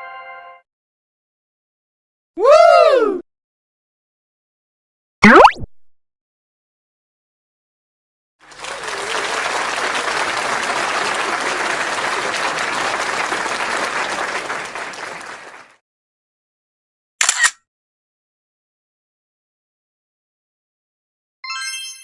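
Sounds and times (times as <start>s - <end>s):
crowd clapping: 8.4s - 15.8s.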